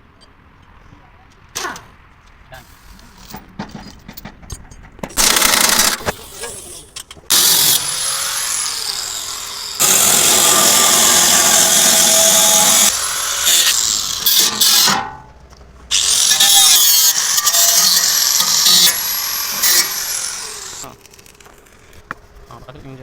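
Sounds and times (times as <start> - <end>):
power tool whining: 5.2 - 15.2, 15.9 - 22.0.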